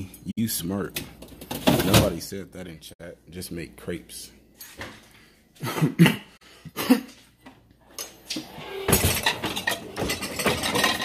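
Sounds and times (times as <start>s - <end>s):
dishes and cutlery clattering: 8.0s - 11.0s.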